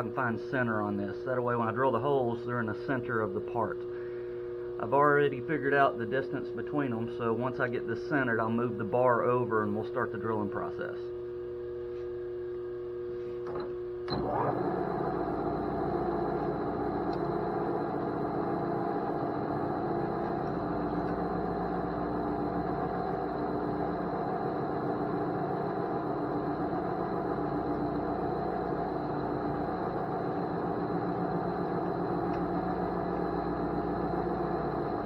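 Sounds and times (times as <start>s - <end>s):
milling machine running: 13.5s - 35.0s.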